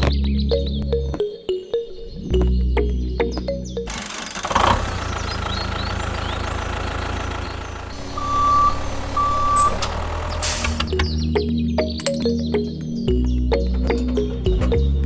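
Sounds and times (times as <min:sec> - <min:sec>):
vehicle engine rumbling: 0:02.4 - 0:15.0
short beeps: 0:08.0 - 0:10.0.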